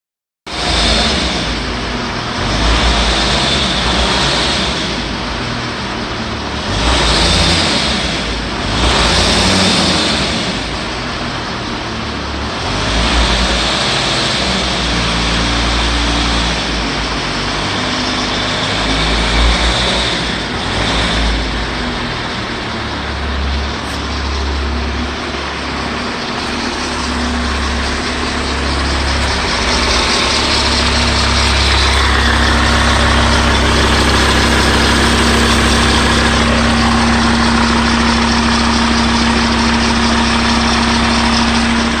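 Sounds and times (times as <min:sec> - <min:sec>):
diesel engine running: 0:00.5 - 0:42.0
engine whistling noise: 0:12.6 - 0:42.0.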